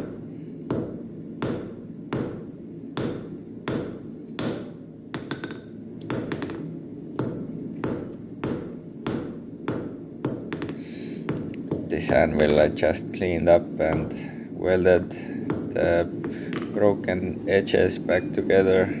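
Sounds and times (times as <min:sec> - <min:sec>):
anvil ringing: 0:00.0 - 0:11.5
hammer striking steel on anvil: 0:00.0 - 0:12.8, 0:13.9 - 0:14.3, 0:15.5 - 0:16.8.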